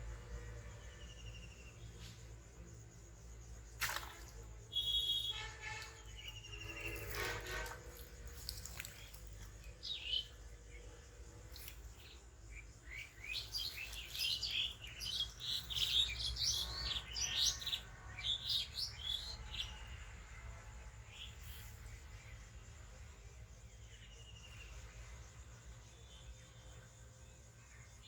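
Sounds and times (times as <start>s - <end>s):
small birds chirping: 0.8s - 20.0s.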